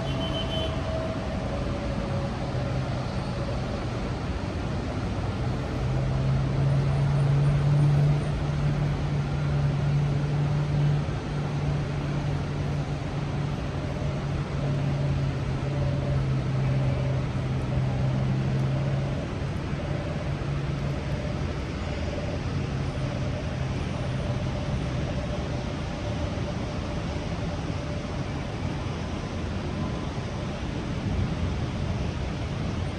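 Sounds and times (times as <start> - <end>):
low engine hum: 0.0 - 32.9.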